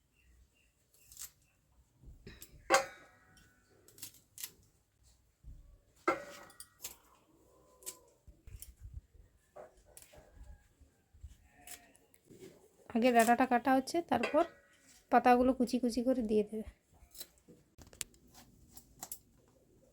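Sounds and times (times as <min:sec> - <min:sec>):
stems being cut with blade: 0:11.6 - 0:12.1, 0:13.0 - 0:13.6.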